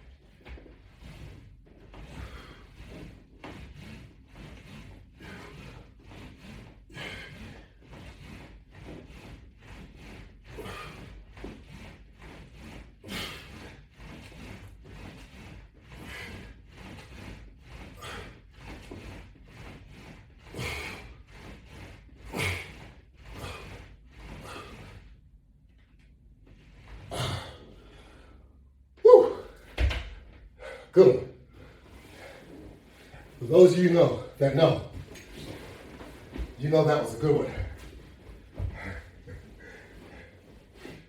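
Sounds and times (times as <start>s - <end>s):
man exhaling forcefully: 27.1s - 28.2s
man vocal grunt: 29.0s - 29.6s.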